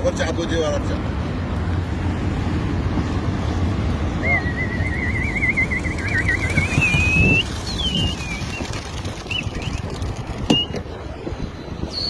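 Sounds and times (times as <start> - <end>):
warbling whistle rising in pitch: 4.2 - 9.8.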